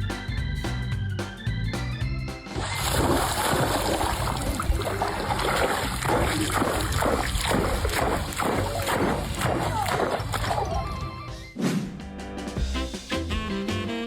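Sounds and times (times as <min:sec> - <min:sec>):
music with steady beat: 0:00.0 - 0:02.8, 0:11.3 - 0:14.0
water splashing: 0:02.6 - 0:11.0.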